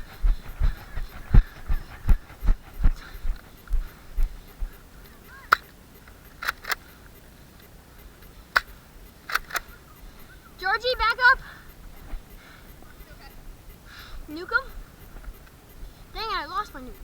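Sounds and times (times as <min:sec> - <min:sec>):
running footsteps: 0:00.0 - 0:17.0
sharp clicks: 0:01.6 - 0:11.0.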